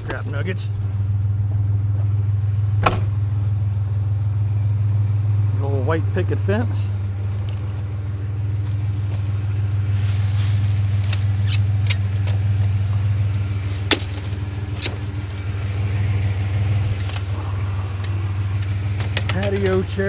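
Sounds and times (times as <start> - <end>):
truck engine idling: 0.0 - 20.0
sharp knocks and clatters: 2.8 - 3.2.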